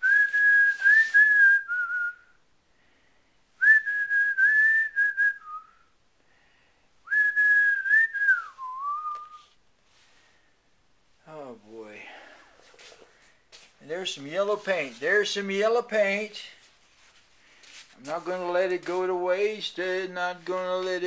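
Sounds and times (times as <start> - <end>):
man whistling a tune: 0.0 - 2.4, 3.6 - 6.0, 7.0 - 9.6.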